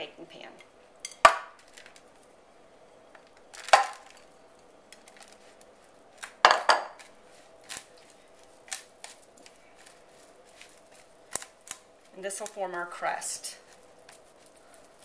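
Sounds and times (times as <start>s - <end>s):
dishes knocking and clattering: 6.4s - 7.0s.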